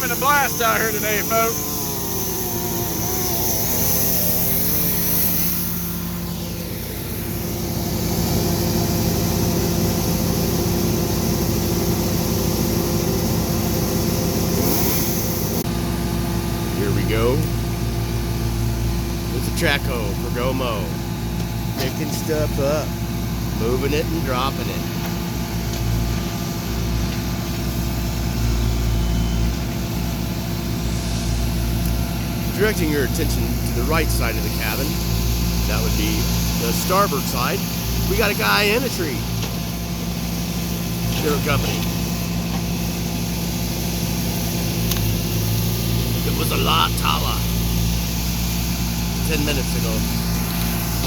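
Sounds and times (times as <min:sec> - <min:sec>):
wavering whine: 0:00.0 - 0:10.6, 0:27.6 - 0:42.4
diesel engine running: 0:00.0 - 0:51.0.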